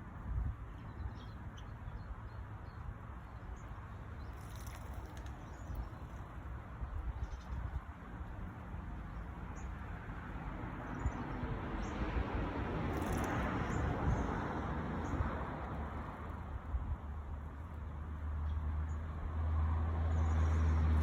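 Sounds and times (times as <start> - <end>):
small birds chirping: 0.6 - 7.9, 12.9 - 14.4.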